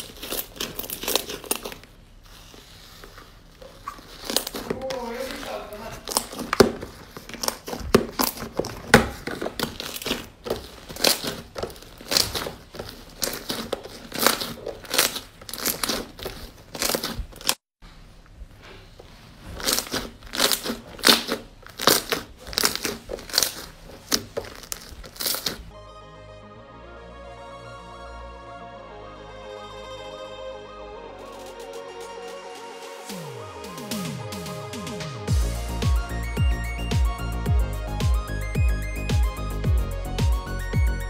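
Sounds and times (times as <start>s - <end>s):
slime squeezed by hand crackling: 0.0s - 17.6s, 19.3s - 25.7s.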